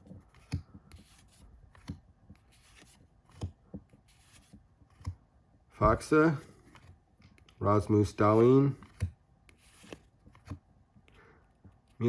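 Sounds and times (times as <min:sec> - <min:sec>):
cards snapping and sliding: 0:00.2 - 0:05.2, 0:08.8 - 0:10.6.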